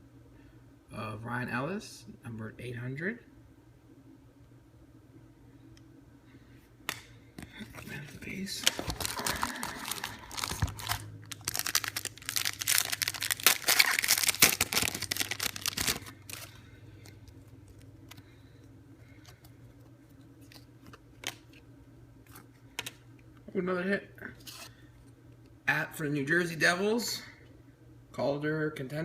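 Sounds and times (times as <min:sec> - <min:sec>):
wrapper being torn and crinkled: 0:08.6 - 0:16.6.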